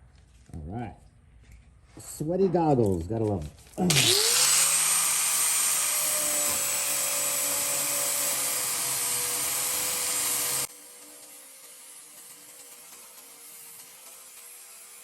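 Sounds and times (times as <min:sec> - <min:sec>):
power grinder whining: 0:03.8 - 0:15.0.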